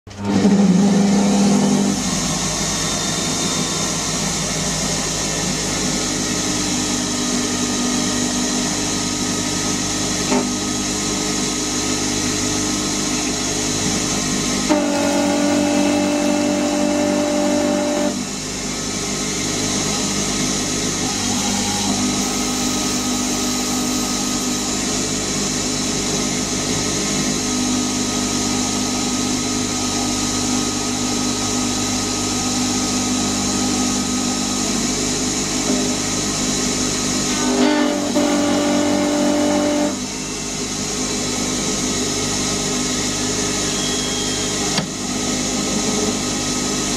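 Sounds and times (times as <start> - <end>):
lathe machine whine: 0.1 - 46.9
high machine tone: 0.2 - 8.4, 20.9 - 25.0, 43.0 - 45.2.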